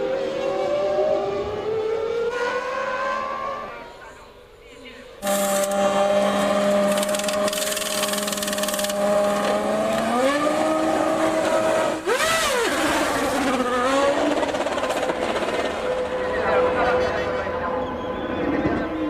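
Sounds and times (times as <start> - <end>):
race car engine revving: 5.2 - 17.6.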